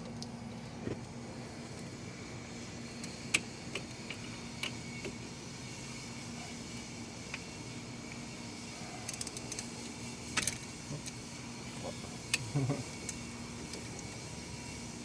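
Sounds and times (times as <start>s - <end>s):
steady low hum: 0.0s - 15.0s
metallic clicks of hand tools: 9.1s - 9.7s.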